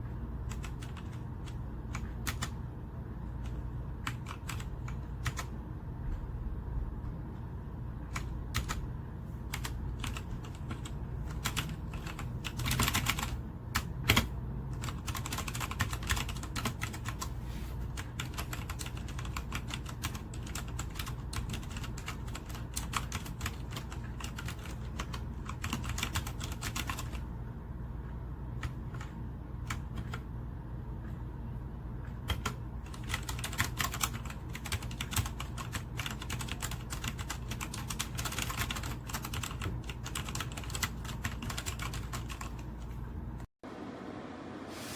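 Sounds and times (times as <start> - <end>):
fast typing on mechanical keyboard: 0.4 - 2.6, 3.4 - 5.5, 8.1 - 8.9, 9.5 - 17.3, 17.9 - 27.2, 28.6 - 30.2, 32.1 - 42.8.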